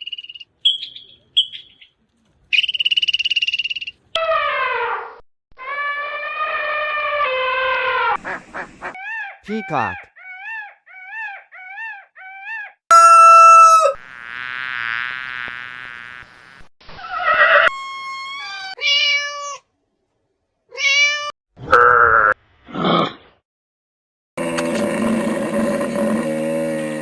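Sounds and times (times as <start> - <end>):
animal calls: 5.6 - 14.0.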